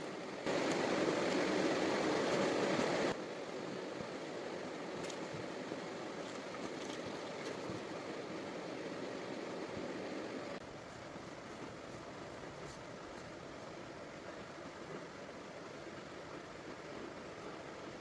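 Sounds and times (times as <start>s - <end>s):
river water rushing: 0.0s - 3.3s.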